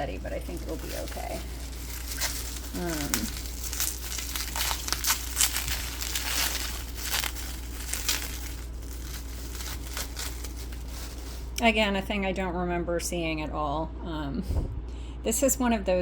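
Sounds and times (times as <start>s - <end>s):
bubble wrap crinkling: 0.0s - 12.0s.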